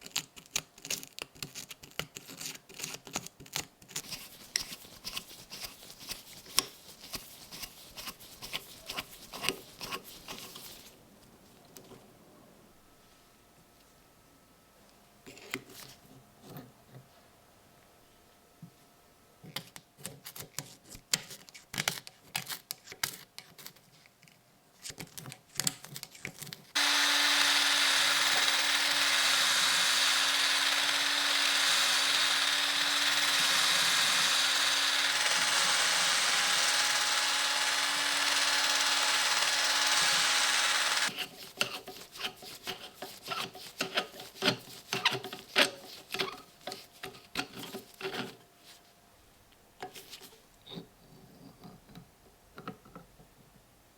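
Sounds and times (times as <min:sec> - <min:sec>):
small power tool humming: 0:26.8 - 0:41.1.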